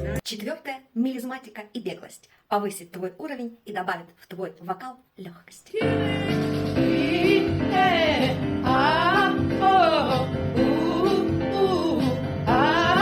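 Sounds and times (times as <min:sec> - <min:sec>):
instrumental backing music: 0:00.0 - 0:00.2, 0:05.8 - 0:13.0.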